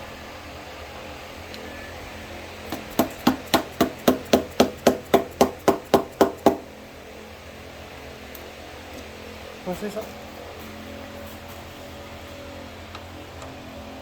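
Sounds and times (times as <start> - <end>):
hammer tapping metal: 2.7 - 6.6.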